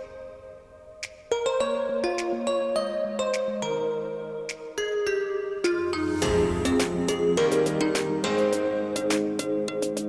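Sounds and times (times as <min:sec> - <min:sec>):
light percussive beat: 0:00.0 - 0:02.5, 0:05.7 - 0:10.0.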